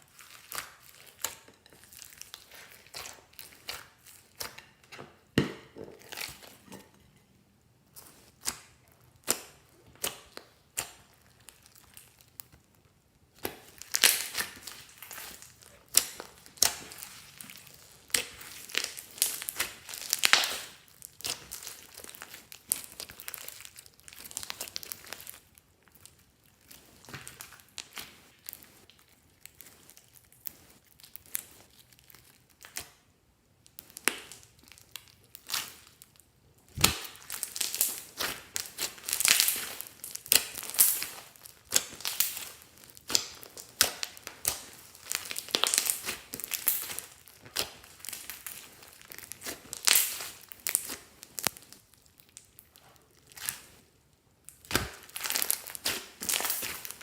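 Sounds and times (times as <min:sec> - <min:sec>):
slime squished by hand: 0:13.3 - 0:57.0.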